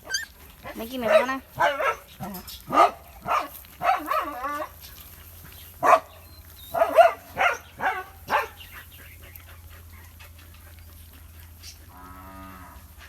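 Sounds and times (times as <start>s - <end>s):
puppies yapping and whining: 0.0s - 13.0s.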